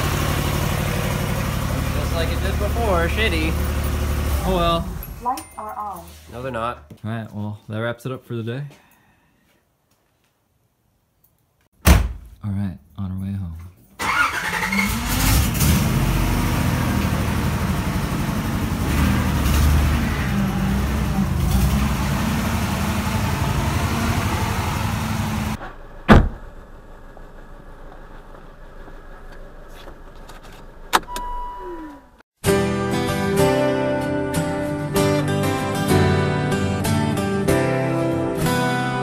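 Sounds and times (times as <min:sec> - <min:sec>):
car engine droning: 0:00.0 - 0:05.3, 0:14.0 - 0:32.2
sharp knock: 0:26.1 - 0:26.5.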